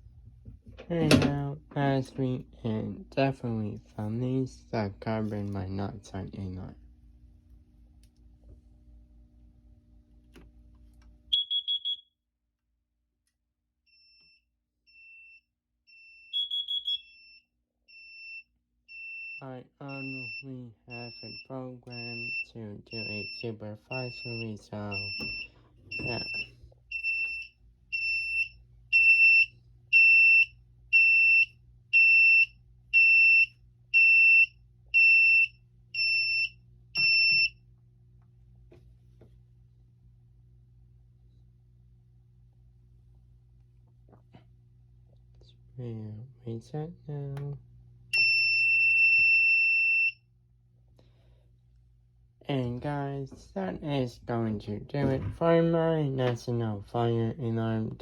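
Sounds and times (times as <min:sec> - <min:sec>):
fire alarm beeping: 0:11.3 - 0:12.1, 0:13.9 - 0:37.6, 0:48.1 - 0:50.3.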